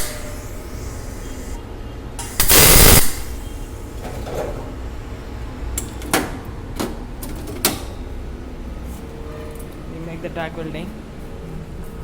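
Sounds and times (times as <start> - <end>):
welding arc crackle: 0.0 - 1.6, 2.4 - 3.4.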